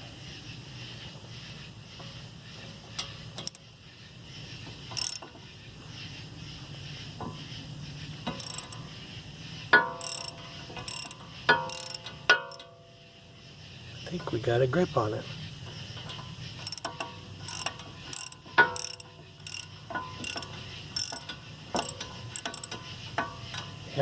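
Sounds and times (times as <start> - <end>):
hand ratchet clicking: 2.9 - 3.6, 4.8 - 5.4, 8.2 - 8.9, 9.7 - 12.7, 15.7 - 23.9
metallic ring: 9.7 - 13.3.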